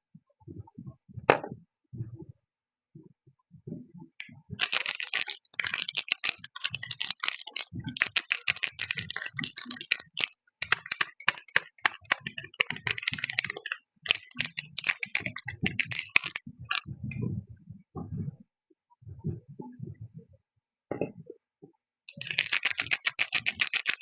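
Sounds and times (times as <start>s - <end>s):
packaging crinkling: 4.6s - 16.8s, 22.1s - 24.0s.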